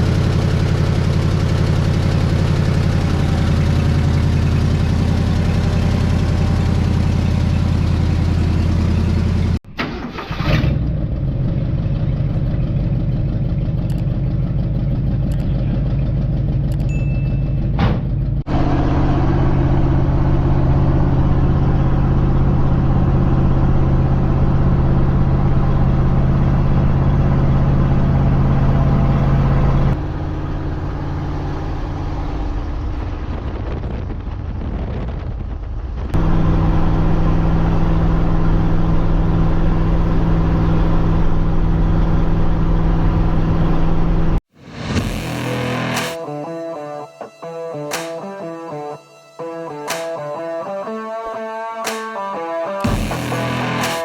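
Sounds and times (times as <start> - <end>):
pickup truck engine running: 0.0 - 9.6, 10.8 - 46.0.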